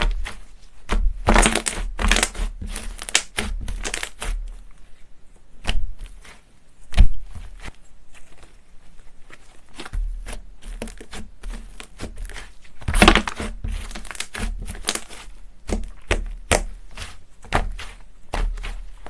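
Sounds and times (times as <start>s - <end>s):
slime clicking and crackling: 0.0s - 4.5s, 9.7s - 19.0s.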